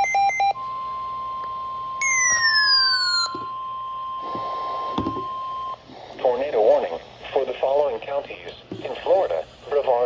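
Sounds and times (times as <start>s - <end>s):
steady high warning beep: 0.0s - 5.8s
descending electronic tone: 2.0s - 3.5s.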